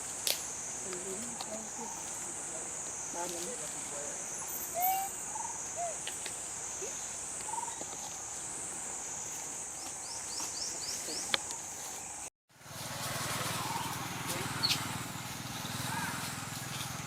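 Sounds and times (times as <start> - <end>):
short chirping calls: 4.2 - 6.2.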